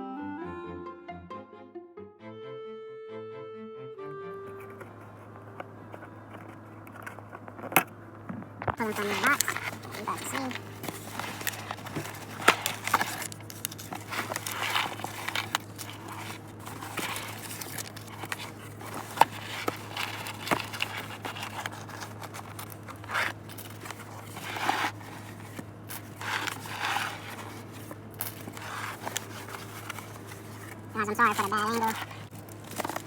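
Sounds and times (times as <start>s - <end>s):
money rustling and crinkling: 4.5s - 33.0s.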